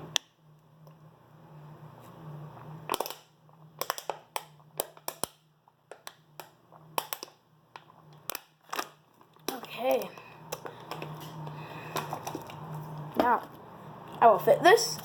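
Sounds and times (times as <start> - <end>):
small objects clicking on table: 2.9 - 11.1.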